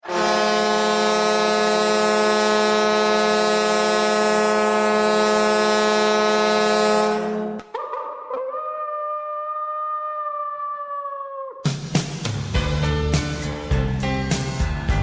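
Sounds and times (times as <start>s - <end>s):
deep goal horn blast: 0.0s - 7.6s.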